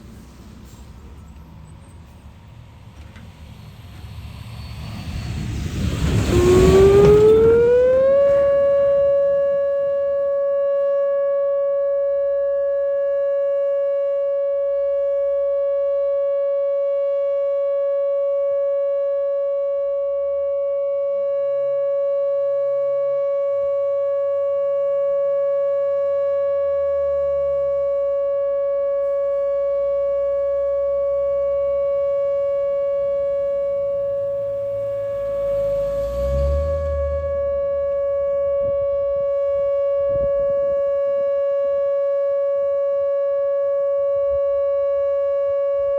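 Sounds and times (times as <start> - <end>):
warning siren steady tone: 0.0 - 45.9
loud rush of noise: 2.7 - 9.2, 31.7 - 37.9.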